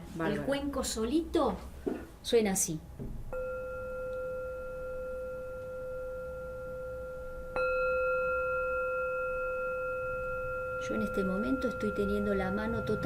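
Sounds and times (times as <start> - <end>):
singing bowl ringing: 3.3 - 13.0
singing bowl struck: 3.3 - 13.0.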